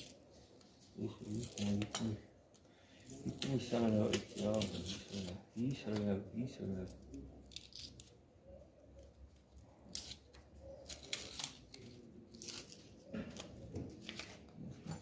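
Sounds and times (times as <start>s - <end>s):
battery cells clicking and scraping: 9.4s - 12.9s.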